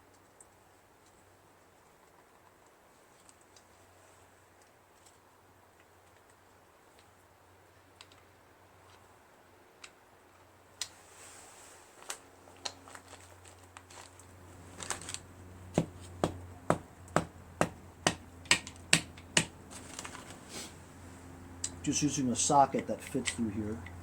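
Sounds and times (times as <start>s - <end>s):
scattered clicks and knocks: 15.7s - 20.2s.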